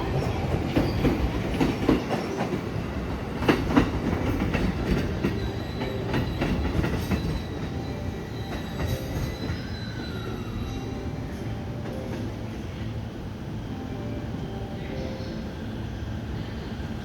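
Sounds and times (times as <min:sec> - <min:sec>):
train rumble: 0:00.0 - 0:17.0
train wheels clacking over rail joints: 0:00.6 - 0:07.8.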